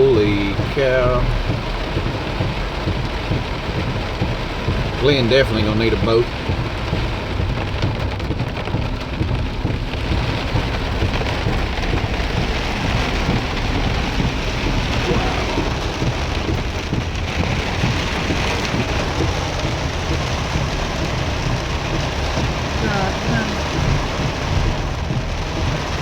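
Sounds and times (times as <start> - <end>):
heavy rain hissing: 0.0 - 26.0
truck driving rumble: 0.0 - 26.0.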